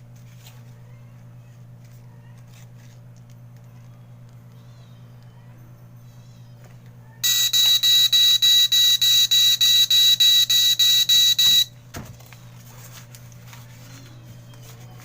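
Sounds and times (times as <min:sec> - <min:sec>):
smoke alarm beeping: 0:07.2 - 0:11.7.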